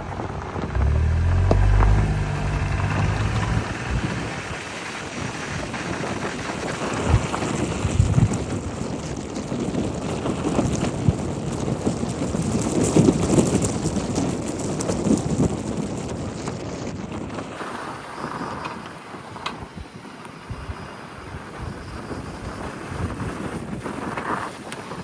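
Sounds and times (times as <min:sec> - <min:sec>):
road and wind noise: 0:00.0 - 0:25.0.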